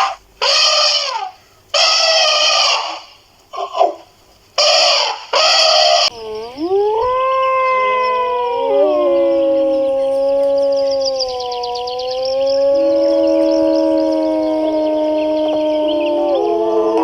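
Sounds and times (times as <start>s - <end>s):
short harsh calls: 0.0s - 4.0s, 4.6s - 8.7s
dogs howling together: 6.1s - 17.0s.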